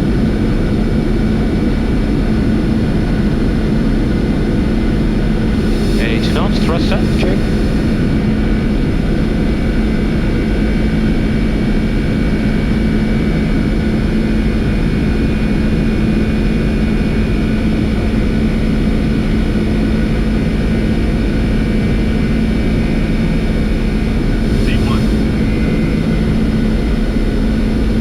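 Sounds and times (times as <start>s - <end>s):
jet engine and rolling noise: 0.6s - 28.0s
constant low hum: 4.2s - 8.9s, 22.7s - 28.0s.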